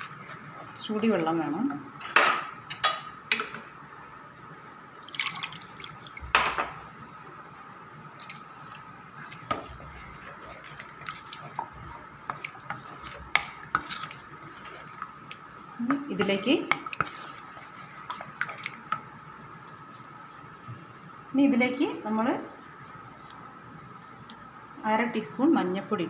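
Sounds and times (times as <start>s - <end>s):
water splashing and scraping: 8.2s - 15.1s, 16.2s - 18.9s.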